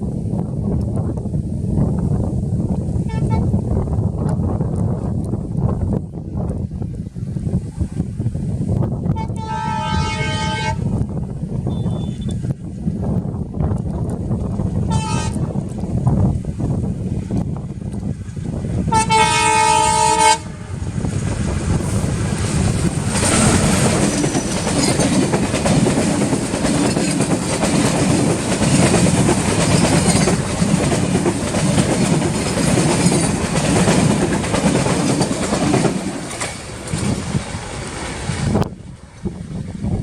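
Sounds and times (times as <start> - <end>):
train passing with wheel noise: 0.0 - 40.0
train horn: 3.0 - 3.5, 9.1 - 11.0, 11.7 - 12.3, 14.9 - 15.4, 18.9 - 20.7
wheels clacking over rail joints: 21.1 - 38.7.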